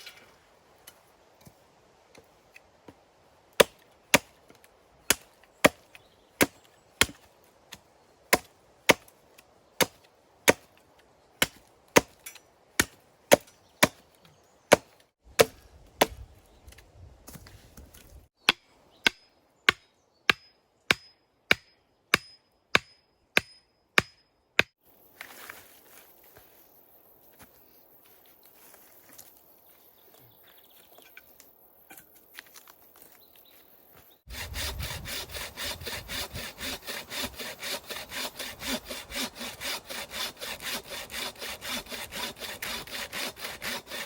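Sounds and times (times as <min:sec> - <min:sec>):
axe chopping wood: 0:03.6 - 0:09.1, 0:09.8 - 0:10.7, 0:11.4 - 0:14.0, 0:14.7 - 0:16.2, 0:18.5 - 0:24.7.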